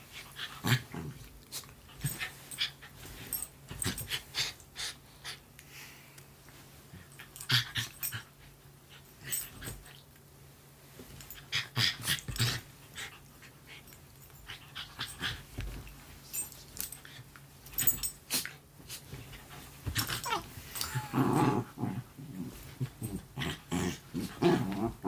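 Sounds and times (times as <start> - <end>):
dogs growling: 20.0 - 25.0.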